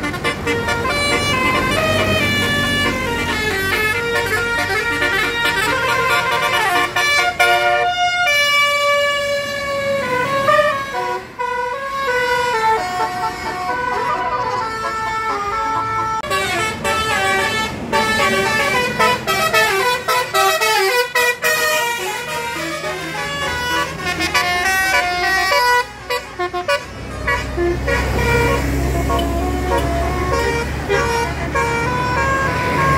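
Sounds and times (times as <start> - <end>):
low engine rumble: 0.0 - 32.9
multi-tone bus horn tune: 0.0 - 32.9.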